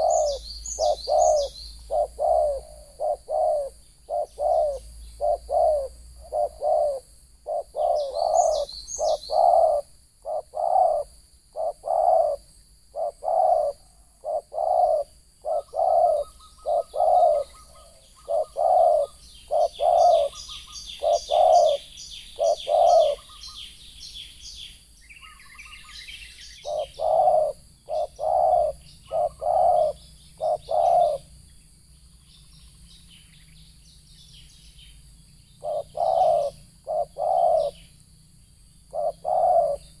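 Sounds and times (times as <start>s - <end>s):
doves cooing: 0.0s - 23.6s, 26.5s - 31.4s, 35.6s - 38.0s, 38.9s - 40.0s
small bird chirping: 0.0s - 40.0s.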